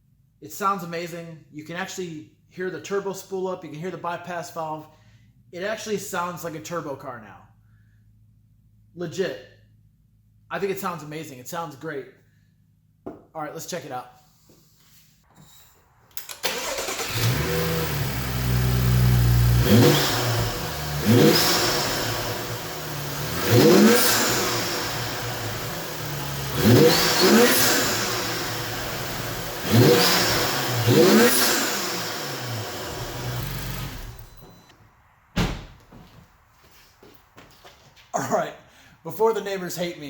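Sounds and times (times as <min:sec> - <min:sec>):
car engine idling and revving: 0:16.3 - 0:34.7.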